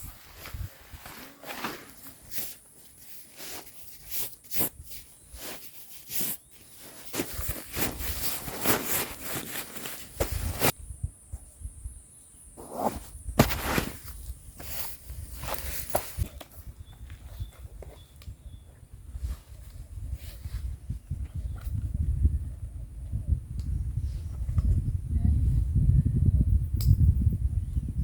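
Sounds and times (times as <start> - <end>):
rustles and knocks of handling: 5.4 - 10.8.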